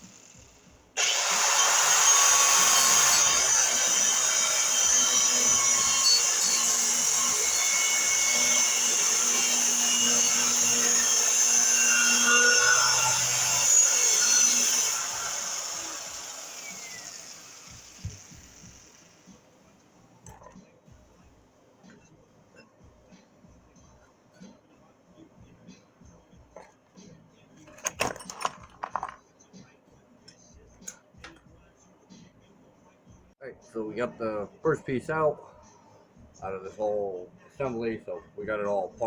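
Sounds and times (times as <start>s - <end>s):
power tool cutting steel: 0.0s - 19.3s.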